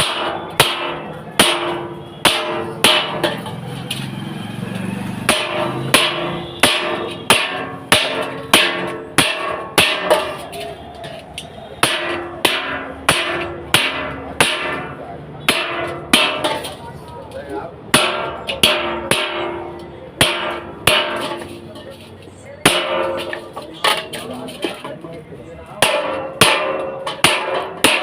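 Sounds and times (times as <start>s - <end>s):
hammer striking iron on anvil: 0.0s - 3.6s, 5.2s - 10.6s, 11.8s - 16.8s, 17.9s - 21.9s, 22.6s - 24.2s, 25.7s - 28.0s.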